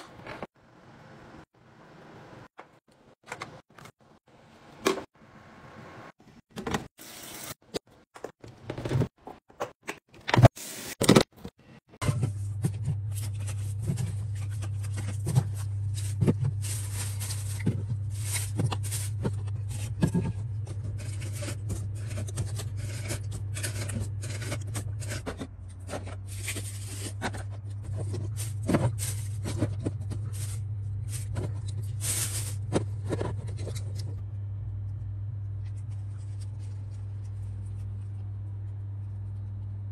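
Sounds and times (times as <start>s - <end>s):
containers clicking and scraping: 12.0s - 34.2s
steady low hum: 12.0s - 39.9s.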